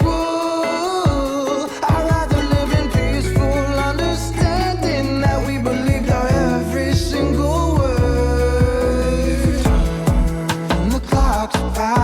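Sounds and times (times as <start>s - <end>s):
pop song with vocals and drums: 0.0s - 12.0s.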